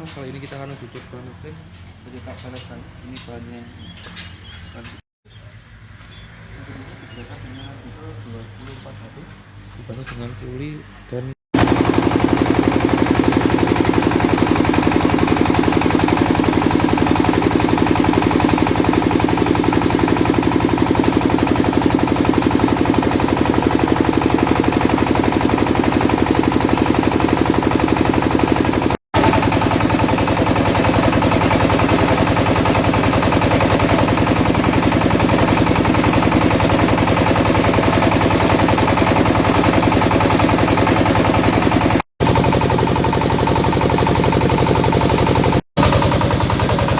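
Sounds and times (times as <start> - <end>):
motor and pulley hum: 11.6 - 46.9.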